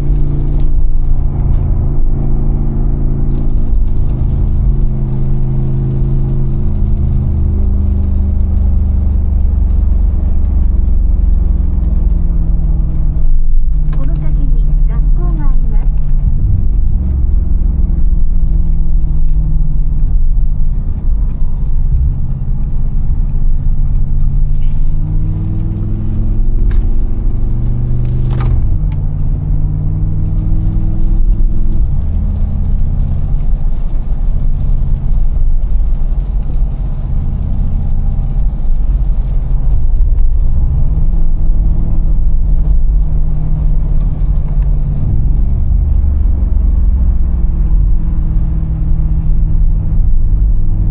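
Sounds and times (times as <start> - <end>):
car engine accelerating: 0.0 - 50.9
exhaust crack at gear shift: 0.0 - 50.9.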